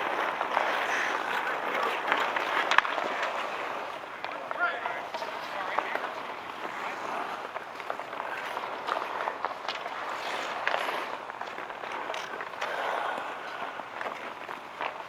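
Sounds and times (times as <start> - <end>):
hockey sticks and puck clacking: 0.0 - 15.0
skate blades scraping ice: 0.0 - 15.0.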